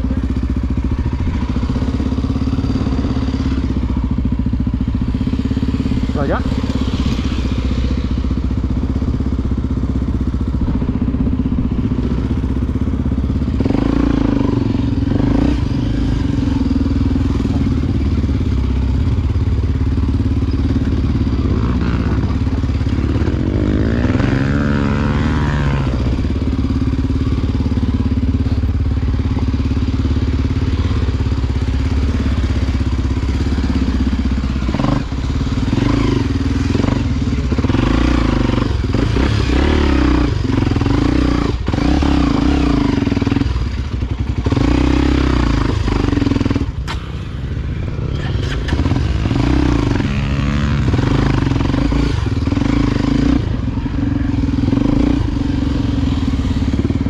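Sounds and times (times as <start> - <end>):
dirt bike engine running: 0.0 - 57.0.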